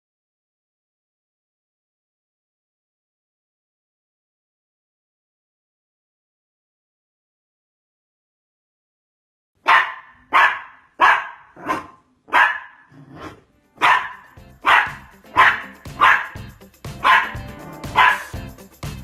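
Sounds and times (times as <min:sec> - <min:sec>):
dog barking: 0:09.6 - 0:16.4, 0:17.0 - 0:18.4
music: 0:13.5 - 0:19.0.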